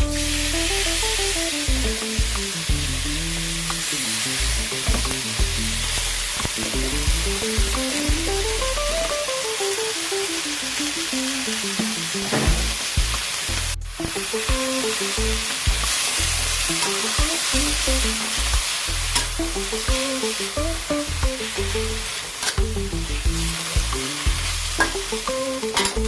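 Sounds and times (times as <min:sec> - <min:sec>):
leaves sizzling in hot oil: 0:00.0 - 0:26.0
melodic background tune: 0:07.1 - 0:12.7.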